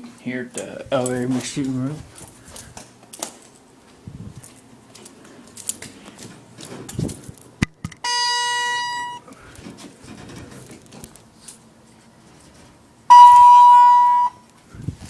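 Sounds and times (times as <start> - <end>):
elevator beep: 8.0 - 9.3, 13.1 - 14.4.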